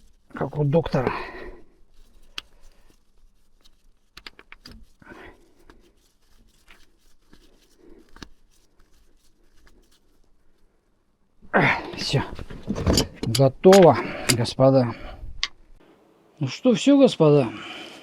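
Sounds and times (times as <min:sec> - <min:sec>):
faint rustling: 0:00.0 - 0:15.8
handling clicks and knocks: 0:04.1 - 0:04.8, 0:11.9 - 0:14.7.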